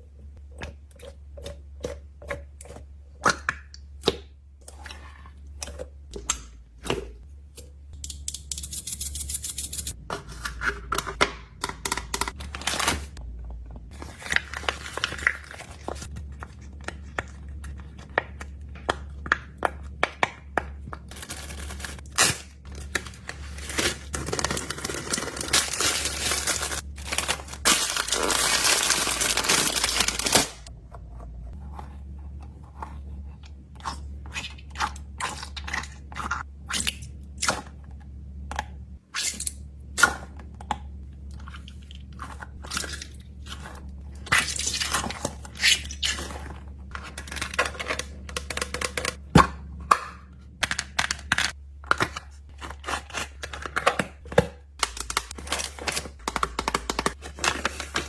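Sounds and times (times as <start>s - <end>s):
small items tapping and clicking: 10.8s - 12.5s, 53.4s - 58.0s
packaging crinkling and rustling: 12.2s - 13.2s, 13.9s - 18.0s, 21.1s - 30.7s, 52.5s - 58.0s.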